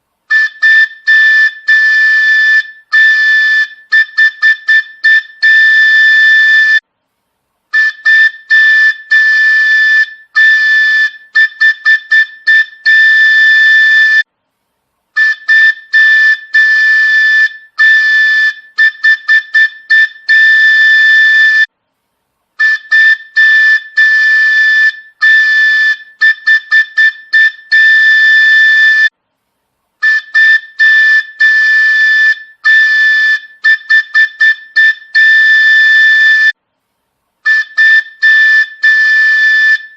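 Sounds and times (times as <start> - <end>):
high-pitched whistle toots: 0.3 - 6.8, 7.8 - 14.3, 15.2 - 21.7, 22.6 - 29.1, 30.0 - 36.6, 37.4 - 39.9.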